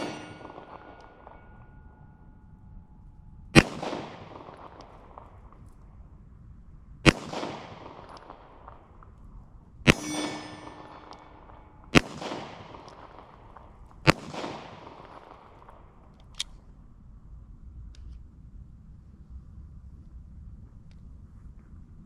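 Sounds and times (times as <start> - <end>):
gunshots with echo: 0.0 - 1.5, 3.6 - 5.2, 9.9 - 13.4
metallic ringing: 0.0 - 3.6, 9.9 - 13.0.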